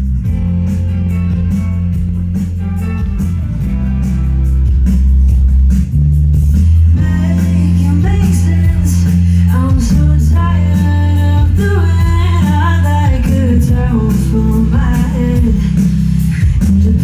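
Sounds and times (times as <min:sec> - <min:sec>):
bass guitar: 0:00.0 - 0:17.0
guitar: 0:00.0 - 0:17.0
percussion beat: 0:00.0 - 0:17.0
person singing lead vocal: 0:07.0 - 0:17.0.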